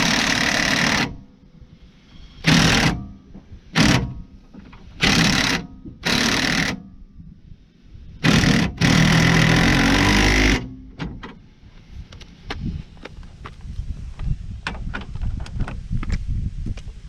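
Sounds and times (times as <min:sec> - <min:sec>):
impact wrench hammering: 0:02.4 - 0:06.9.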